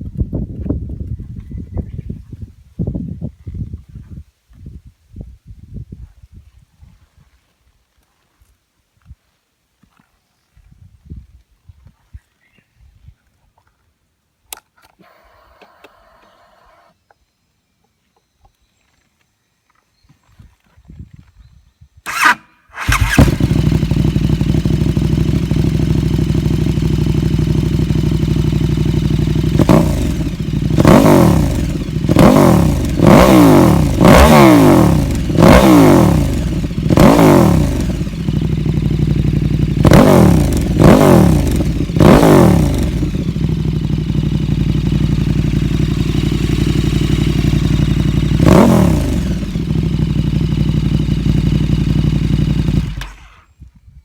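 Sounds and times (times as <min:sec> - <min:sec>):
motorcycle engine starting: 0:22.0 - 0:53.8
motorcycle engine revving: 0:22.1 - 0:53.6.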